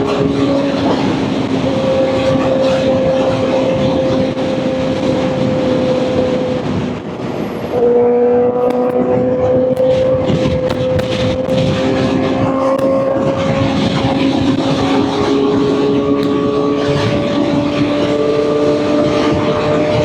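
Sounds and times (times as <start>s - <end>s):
motorcycle engine running high: 0.0s - 20.0s
wind rushing past: 0.0s - 20.0s.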